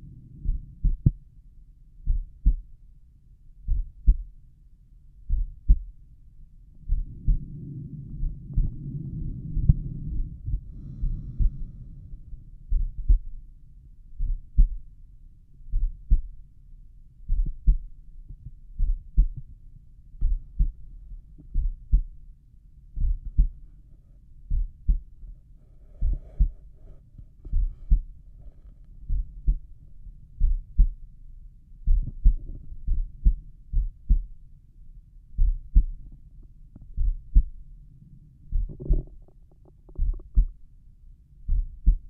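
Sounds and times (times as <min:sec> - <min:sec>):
heartbeat through stethoscope: 0:00.0 - 0:01.3, 0:02.0 - 0:02.8, 0:03.6 - 0:04.4, 0:05.2 - 0:06.0, 0:06.7 - 0:13.5, 0:14.1 - 0:15.0, 0:15.7 - 0:16.4, 0:17.2 - 0:19.6, 0:20.2 - 0:22.2, 0:23.0 - 0:23.7, 0:24.4 - 0:29.8, 0:30.4 - 0:31.1, 0:31.8 - 0:34.4, 0:35.3 - 0:36.2, 0:36.8 - 0:37.6, 0:38.5 - 0:40.6, 0:41.4 - 0:42.0.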